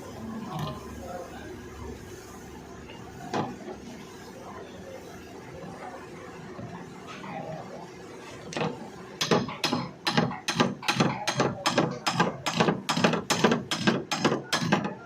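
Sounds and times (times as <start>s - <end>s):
rapid ratchet-like clicking: 9.2s - 15.0s.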